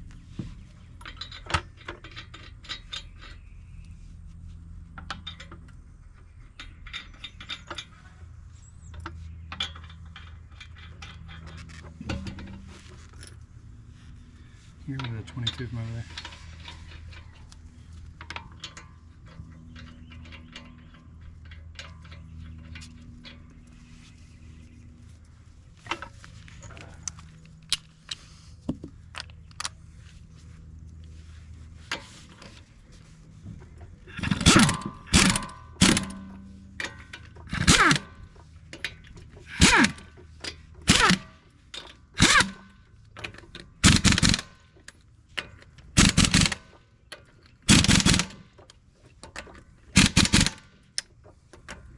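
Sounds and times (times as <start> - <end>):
low steady hum: 0.0 - 51.9
impact wrench bursts: 34.1 - 36.3, 37.4 - 38.2, 39.4 - 40.2, 40.8 - 41.4, 42.2 - 42.8, 43.8 - 44.6, 46.0 - 46.7, 47.7 - 48.5, 49.9 - 50.8
tool clicks and clinks: 34.1 - 51.9.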